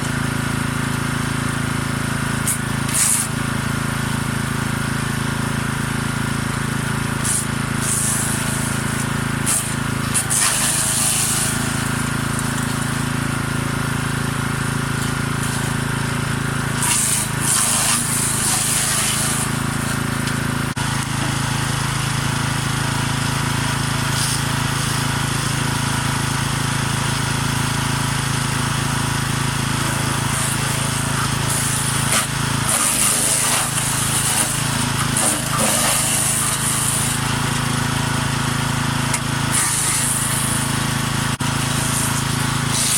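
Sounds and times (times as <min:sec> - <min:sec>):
wood chipper running: 0:00.0 - 0:42.9
branches shredding: 0:07.2 - 0:12.9, 0:16.8 - 0:20.4, 0:29.8 - 0:37.2, 0:39.5 - 0:40.5, 0:41.5 - 0:42.9.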